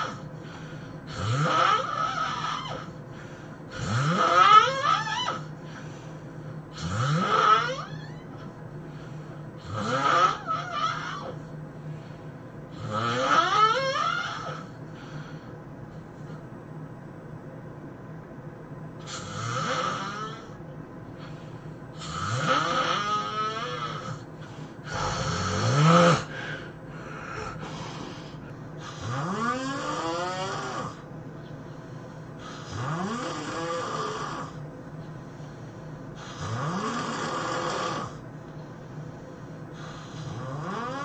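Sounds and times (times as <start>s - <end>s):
person snoring heavily: 0.0s - 3.0s, 3.7s - 5.9s, 6.7s - 8.4s, 9.6s - 11.4s, 12.7s - 15.4s, 19.0s - 20.6s, 21.2s - 31.1s, 32.3s - 34.6s, 36.1s - 38.2s, 39.7s - 41.0s.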